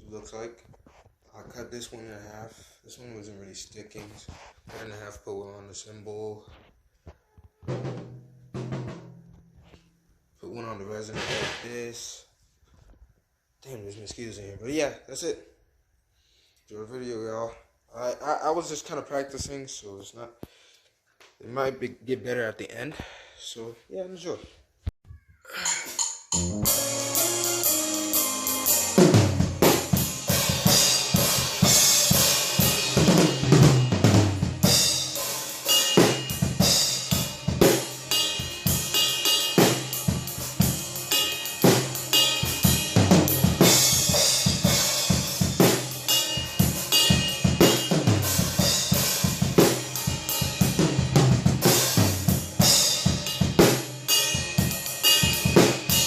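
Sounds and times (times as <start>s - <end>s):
damped drum kit playing: 7.7s - 9.3s, 26.3s - 56.0s.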